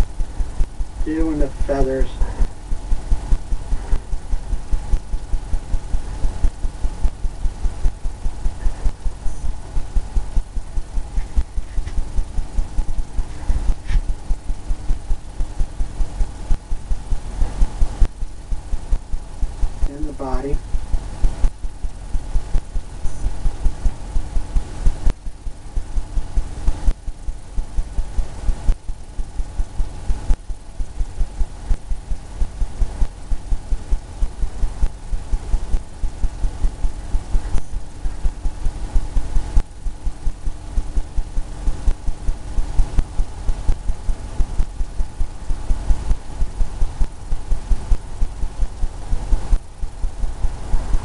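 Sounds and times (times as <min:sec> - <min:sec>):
paintbrush dabbing on canvas: 0:13.2 - 0:14.2.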